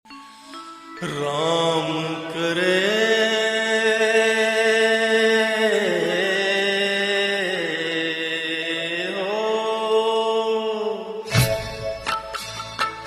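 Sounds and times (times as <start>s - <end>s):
man singing a long note: 1.0s - 11.4s.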